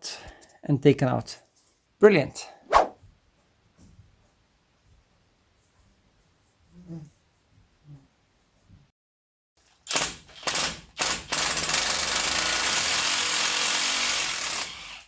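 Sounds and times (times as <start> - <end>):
handheld power tool running: 9.9 - 15.0.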